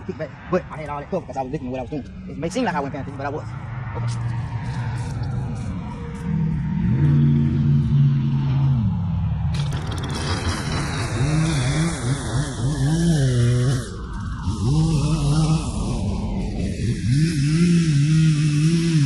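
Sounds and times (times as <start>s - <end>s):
two-stroke saw engine revving: 9.5s - 19.0s.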